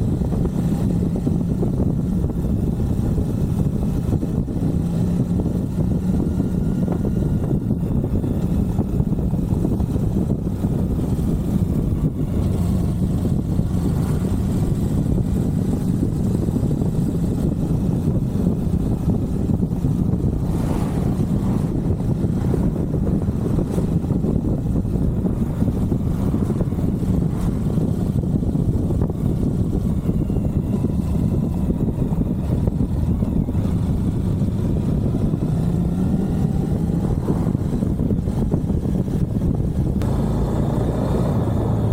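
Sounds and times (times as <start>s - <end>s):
motorcycle engine rumbling: 0.0s - 41.9s
wind and road noise: 0.0s - 41.9s.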